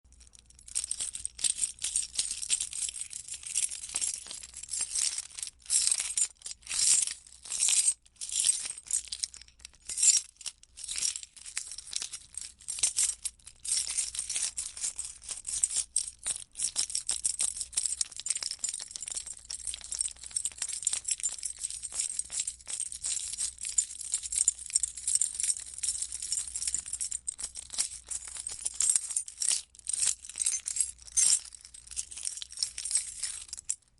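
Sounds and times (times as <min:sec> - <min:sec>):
keys jingling: 0:24.2 - 0:33.8.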